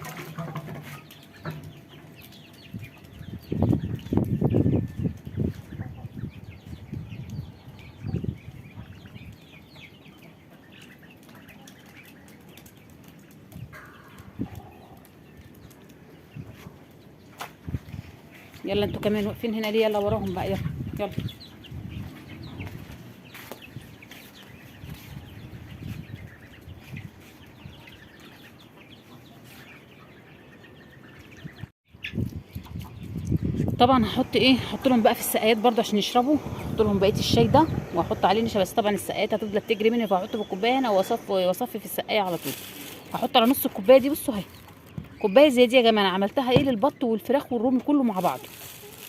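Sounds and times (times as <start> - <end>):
young poultry peeping: 0.0 - 49.0
rustling: 41.8 - 45.2, 48.1 - 49.0.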